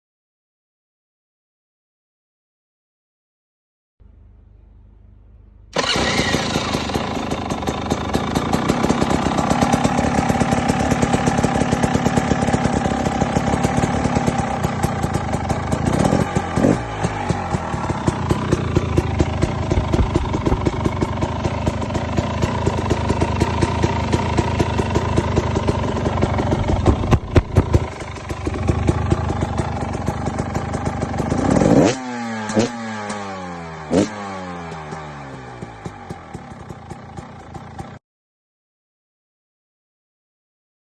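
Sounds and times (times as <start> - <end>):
two-stroke engine revving: 5.7 - 38.0.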